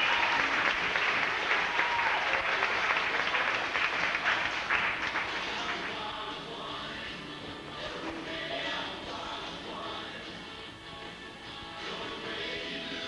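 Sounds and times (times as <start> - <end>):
short calls from audience: 0.0 - 5.8
audience applauding: 0.0 - 6.1.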